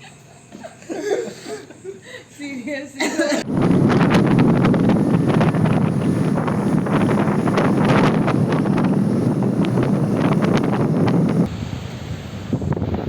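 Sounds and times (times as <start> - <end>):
wind buffeting microphone: 3.4 - 13.0.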